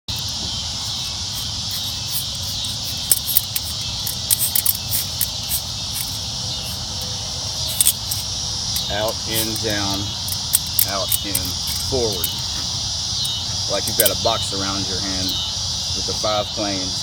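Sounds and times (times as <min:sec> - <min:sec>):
crickets chirping: 0:00.0 - 0:17.0
butterfly knife clicking: 0:00.1 - 0:07.1, 0:07.7 - 0:12.4.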